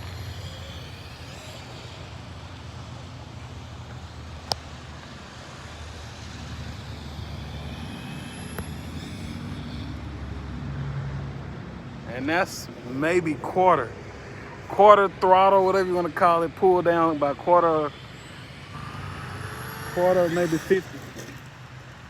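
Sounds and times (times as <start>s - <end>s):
electric motor whining: 0.0s - 10.4s, 16.8s - 22.0s
steady low hum: 0.0s - 10.6s, 11.4s - 22.0s.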